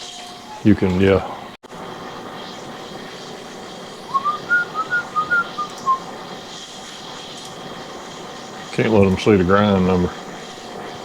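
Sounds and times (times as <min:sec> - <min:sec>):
steady background hum: 0:00.2 - 0:11.0
person whistling a tune: 0:04.1 - 0:06.0.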